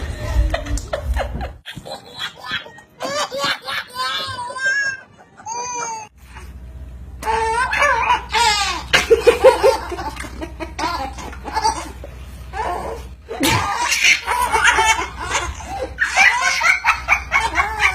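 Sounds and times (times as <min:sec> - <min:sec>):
person laughing: 0:08.9 - 0:11.9.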